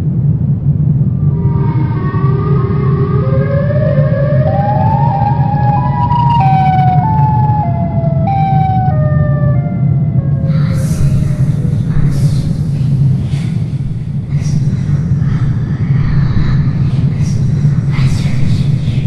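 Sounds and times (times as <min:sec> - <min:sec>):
low rumbling drone: 0:00.0 - 0:19.0
high wailing held tones: 0:01.1 - 0:11.9.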